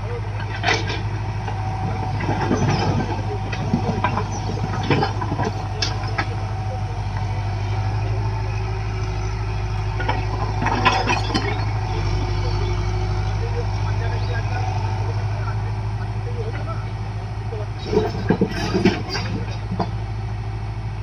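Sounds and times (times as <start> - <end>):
diesel engine humming: 0.0 - 21.0
short knocks and clatters: 17.8 - 20.0.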